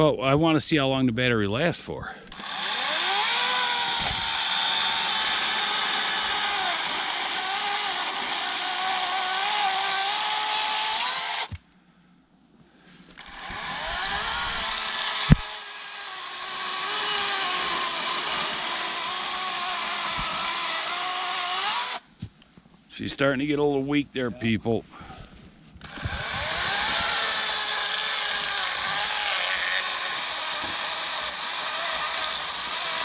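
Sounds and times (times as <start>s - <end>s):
electric chainsaw cutting wood: 2.3s - 11.6s, 13.2s - 22.1s, 25.8s - 33.0s.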